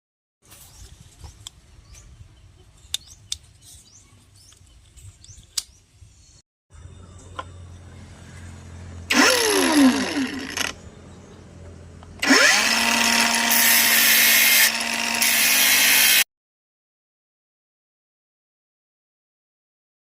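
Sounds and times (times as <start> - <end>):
electric power tool motor: 9.1 - 10.8, 12.2 - 16.3.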